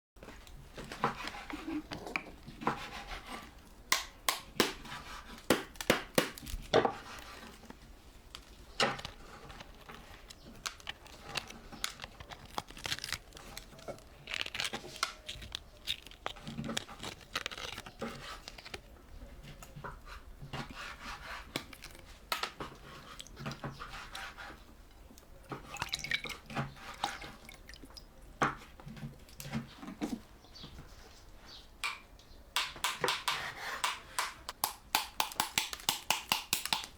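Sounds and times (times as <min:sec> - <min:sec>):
rustling and crinkling: 0:00.2 - 0:03.8, 0:06.2 - 0:27.6, 0:28.3 - 0:31.8.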